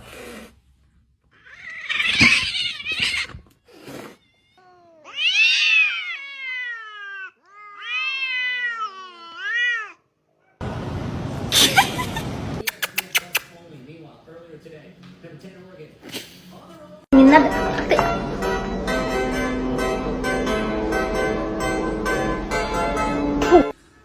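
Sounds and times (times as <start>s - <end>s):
cat yowling: 1.4s - 3.4s, 4.0s - 10.0s.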